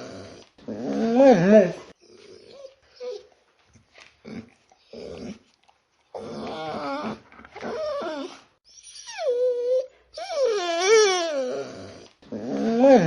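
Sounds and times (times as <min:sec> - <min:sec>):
dog whining: 0:00.0 - 0:03.4, 0:06.1 - 0:13.0.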